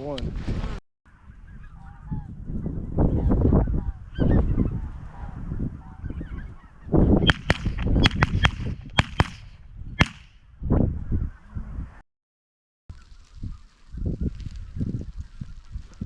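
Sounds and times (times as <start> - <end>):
wind rumbling on microphone: 0.0 - 12.0, 12.9 - 16.0
rapid shotgun shots: 7.3 - 10.3.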